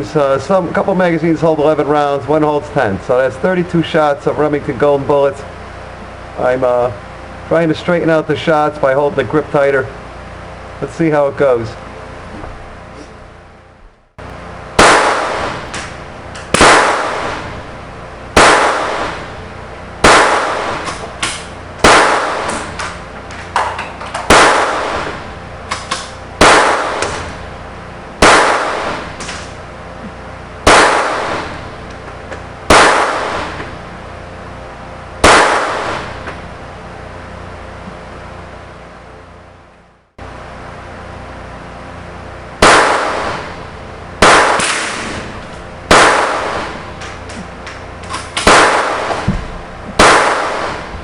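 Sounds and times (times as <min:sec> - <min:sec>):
pistol shots cracking: 0:14.8 - 0:17.7, 0:18.3 - 0:19.4, 0:20.0 - 0:27.5, 0:28.2 - 0:29.6, 0:30.6 - 0:31.9, 0:32.7 - 0:33.8, 0:35.2 - 0:36.4, 0:42.6 - 0:43.6, 0:44.2 - 0:51.0
faint gunshot cracks: 0:32.7 - 0:33.7, 0:48.4 - 0:49.4.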